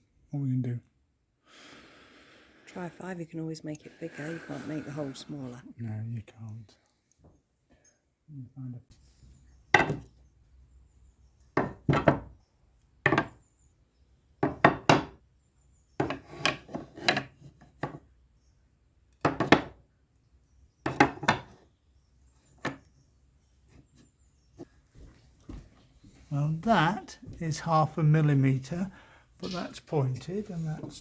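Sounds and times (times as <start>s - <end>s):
wooden clacks and knocks: 9.7s - 10.1s, 11.6s - 12.3s, 13.1s - 13.4s, 14.4s - 15.2s, 16.0s - 18.0s, 19.2s - 19.8s, 20.8s - 21.6s.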